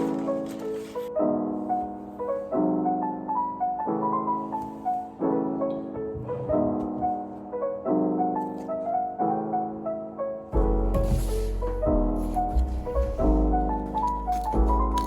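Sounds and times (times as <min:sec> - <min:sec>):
soft piano music: 0:00.0 - 0:15.0.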